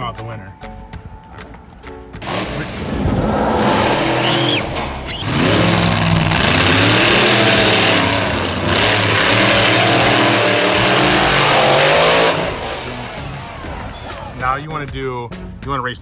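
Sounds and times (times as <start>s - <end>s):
racing car engines revving: 2.2s - 14.5s.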